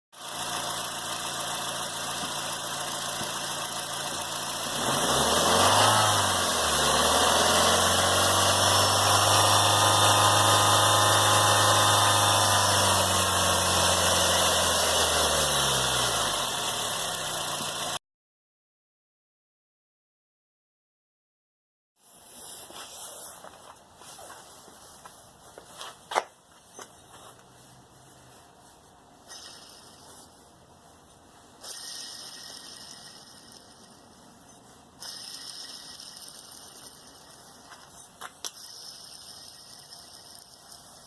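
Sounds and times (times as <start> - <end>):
accessory belt droning whine: 31.6 - 41.0.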